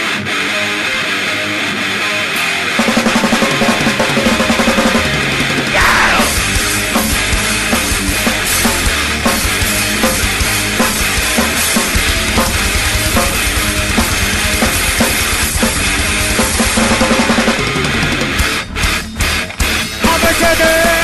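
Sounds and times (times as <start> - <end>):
heavy band music: 0.0 - 21.0
fast kick drum pattern: 5.7 - 21.0.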